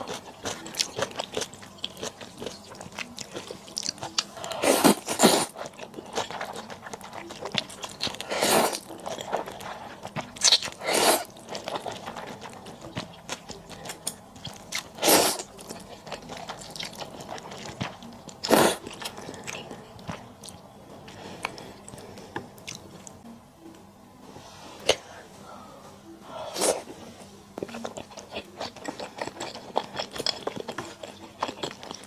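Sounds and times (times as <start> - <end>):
chewing and biting: 0.0 - 20.6, 27.6 - 32.0
slurping noodles: 8.2 - 8.8, 10.7 - 12.0, 15.0 - 15.5.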